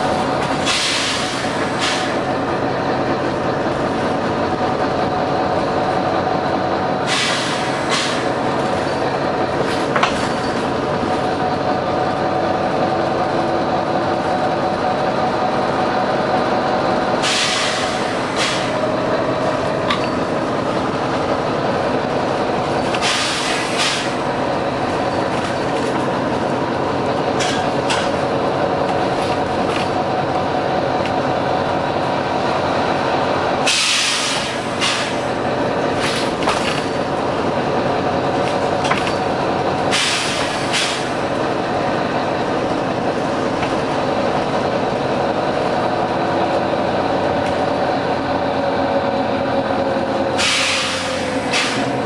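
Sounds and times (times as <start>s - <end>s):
bus engine drone: 0.0s - 52.0s
compressed air hiss: 0.6s - 2.2s, 7.1s - 8.2s, 17.2s - 18.8s, 23.0s - 24.1s, 33.7s - 35.2s, 39.9s - 41.1s, 50.4s - 51.9s.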